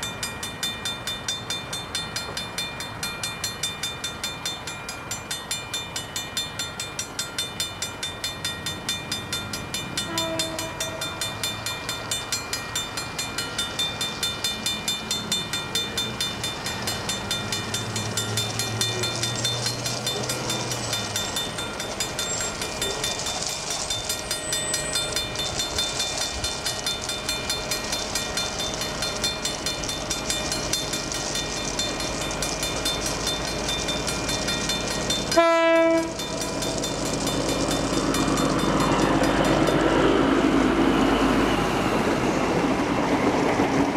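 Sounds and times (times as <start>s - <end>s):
level crossing bell ringing: 0.0s - 40.1s
train rumbling: 0.0s - 43.9s
faint train horn: 10.0s - 11.2s, 35.3s - 36.2s.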